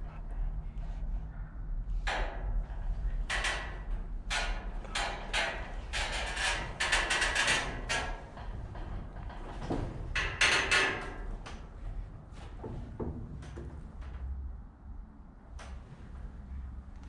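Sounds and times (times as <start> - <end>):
steady low hum: 0.0 - 17.0
irregular knocks and clanks: 2.0 - 14.4.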